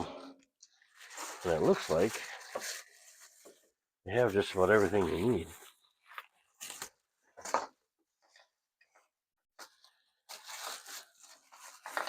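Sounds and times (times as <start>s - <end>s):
packaging crinkling and tearing: 10.3s - 12.0s.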